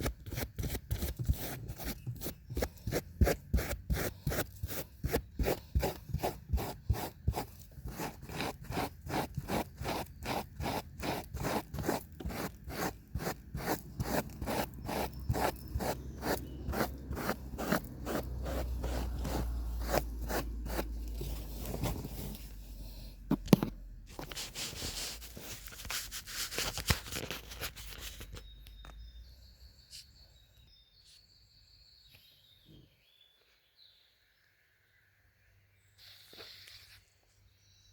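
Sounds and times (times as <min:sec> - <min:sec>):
brush scrubbing carpet: 0:01.2 - 0:21.0.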